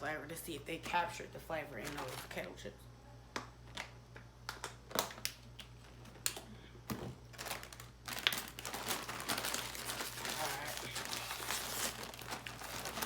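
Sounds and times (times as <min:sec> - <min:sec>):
foil snack bag crinkling: 0:00.5 - 0:02.6, 0:07.3 - 0:13.0.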